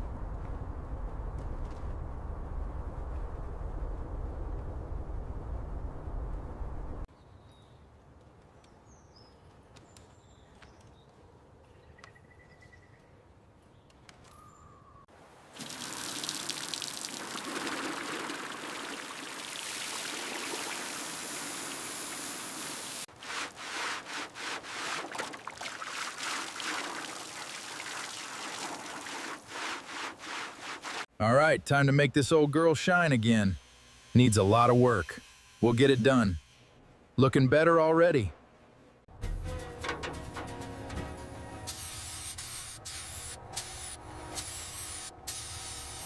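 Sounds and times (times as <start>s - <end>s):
water spraying on a car: 15.6s - 31.1s.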